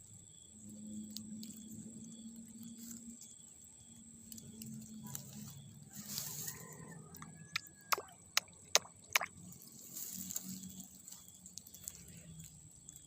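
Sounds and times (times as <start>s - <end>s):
high insect trill: 0.0s - 13.0s
water drops splashing: 7.5s - 9.5s.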